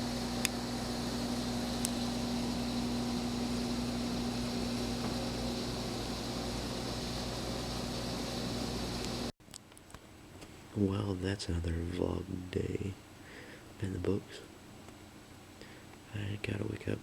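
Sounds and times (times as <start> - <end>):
machine humming and hissing: 0.0 - 9.3.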